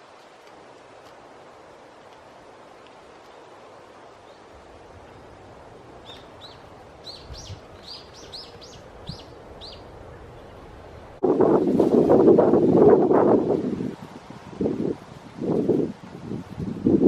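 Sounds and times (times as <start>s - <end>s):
wind and rustling: 0.0s - 17.0s
small bird chirping: 6.0s - 9.9s.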